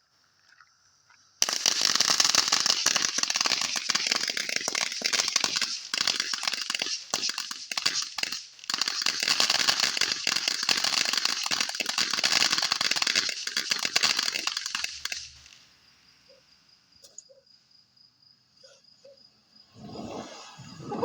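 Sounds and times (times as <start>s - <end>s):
fireworks crackling: 1.4s - 15.7s.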